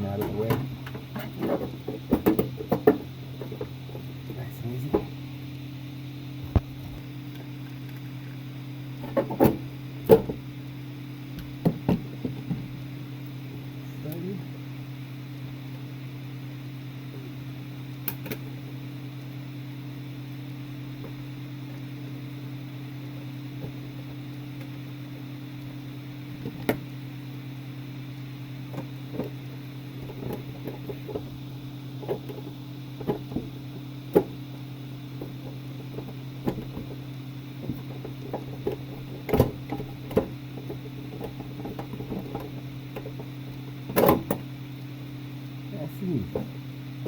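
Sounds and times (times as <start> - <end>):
range hood fan humming: 0.0 - 47.0
hood cover clicking and knocking: 0.2 - 4.1, 32.0 - 34.4, 35.2 - 37.0, 37.6 - 44.5.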